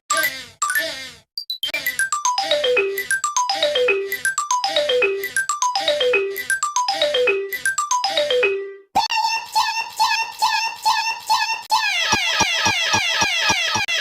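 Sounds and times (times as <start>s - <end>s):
electronic ringtone jingle: 1.4s - 8.9s.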